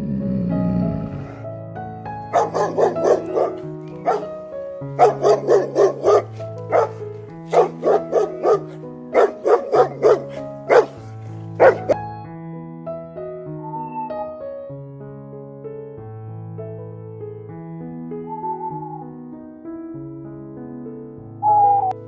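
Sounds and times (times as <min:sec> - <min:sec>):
soft piano music: 0:00.0 - 0:22.0
dog barking: 0:02.3 - 0:04.3, 0:05.0 - 0:12.0.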